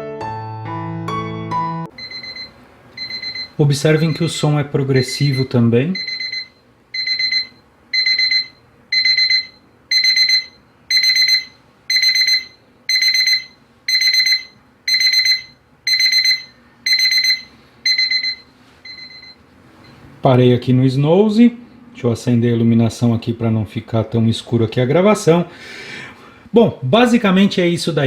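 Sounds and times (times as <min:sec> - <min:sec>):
alarm clock beeping: 0:02.0 - 0:04.4, 0:05.1 - 0:20.0.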